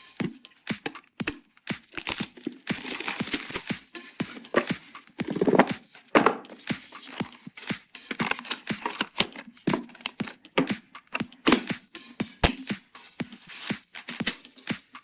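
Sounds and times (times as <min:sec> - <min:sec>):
packaging rustling: 0:01.9 - 0:03.8, 0:08.1 - 0:10.4.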